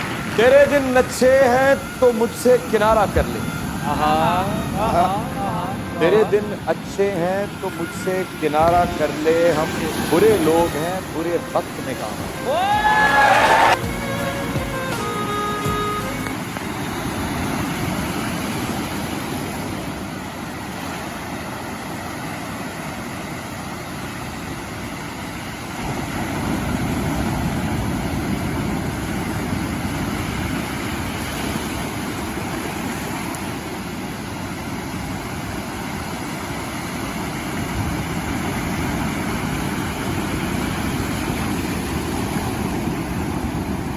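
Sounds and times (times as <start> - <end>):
ocean waves breaking: 0.0 - 43.9.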